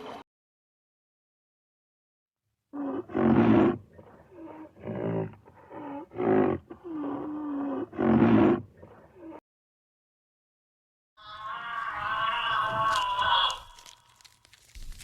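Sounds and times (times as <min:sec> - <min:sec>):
wild animal calling: 0:11.2 - 0:14.3.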